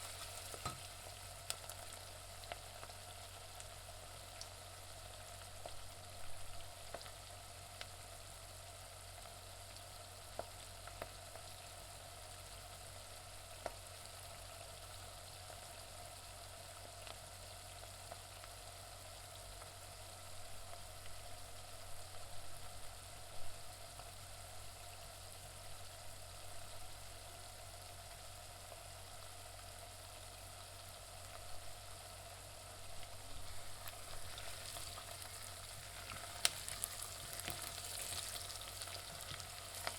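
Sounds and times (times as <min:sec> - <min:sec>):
onions sizzling in a pan: 0:00.0 - 0:39.9
sharp pops and crackling: 0:33.7 - 0:39.9.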